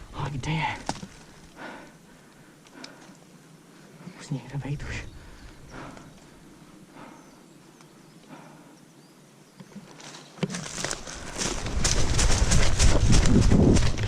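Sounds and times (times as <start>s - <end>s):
footsteps crunching through dry leaves: 9.9s - 14.0s.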